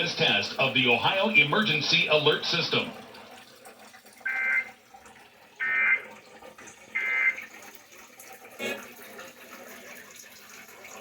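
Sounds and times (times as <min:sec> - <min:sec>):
two-tone digital squawks: 0:04.3 - 0:04.7, 0:05.6 - 0:06.1, 0:07.0 - 0:07.4.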